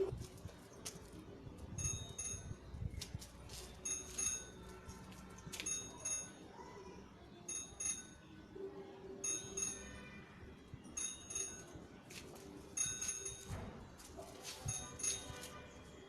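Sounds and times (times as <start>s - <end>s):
bangles clinking: 1.8s - 6.4s, 10.9s - 13.5s, 14.4s - 15.6s.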